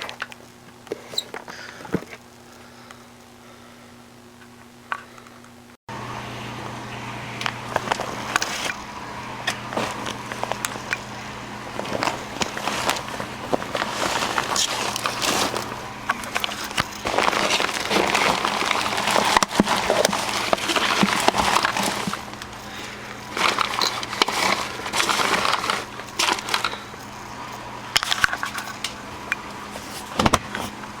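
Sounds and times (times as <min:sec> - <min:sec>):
vacuum cleaner bag crinkling: 0:07.4 - 0:30.8.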